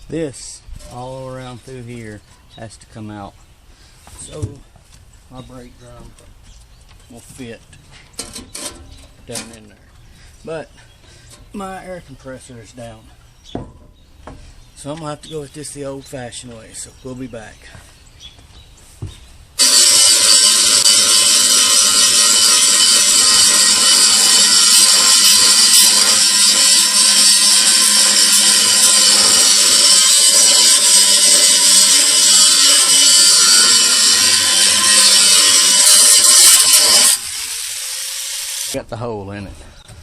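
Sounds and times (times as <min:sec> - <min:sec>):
grinder cutting metal: 0:19.6 - 0:38.8.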